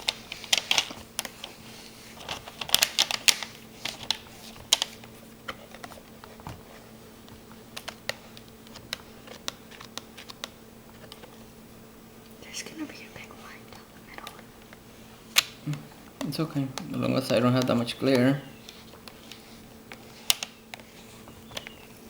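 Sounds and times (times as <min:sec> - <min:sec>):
faint steady hum: 0:00.0 - 0:22.0
laptop clicks and taps: 0:14.2 - 0:21.8.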